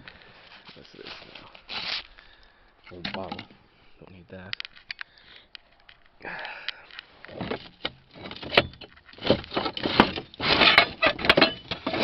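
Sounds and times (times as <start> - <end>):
scrap metal clanking and scraping: 7.3 - 12.0.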